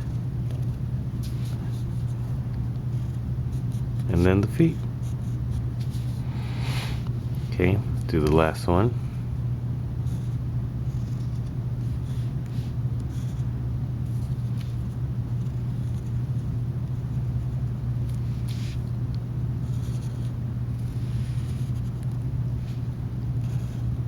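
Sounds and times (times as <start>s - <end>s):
low hum: 0.0s - 24.0s
crayon scratching on paper: 23.4s - 24.0s.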